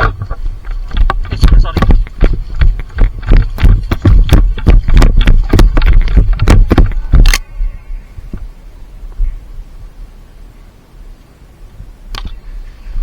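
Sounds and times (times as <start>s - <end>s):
running footsteps thudding on microphone: 0.0s - 7.4s.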